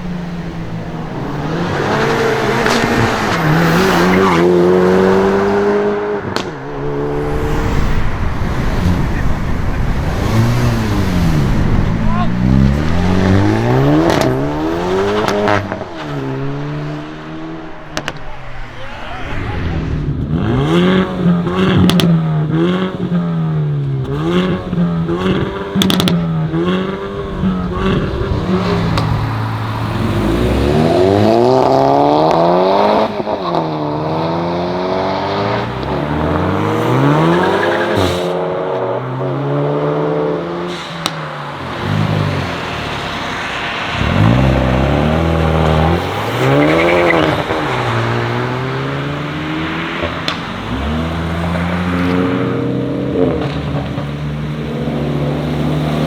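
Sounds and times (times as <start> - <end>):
car engine revving: 0.0 - 56.0
exhaust pops: 6.2 - 19.2, 20.0 - 22.3, 23.8 - 30.2, 43.9 - 54.4.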